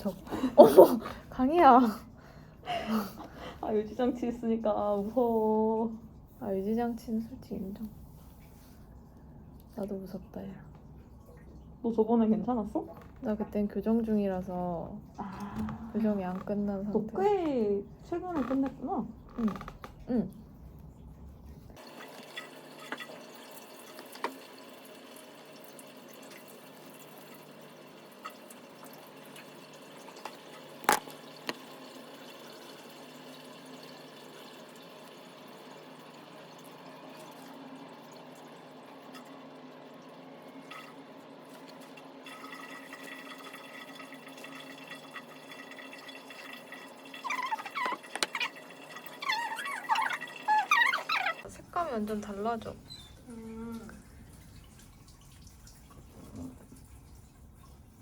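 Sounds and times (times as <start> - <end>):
quiet voices: 15.2 - 16.1.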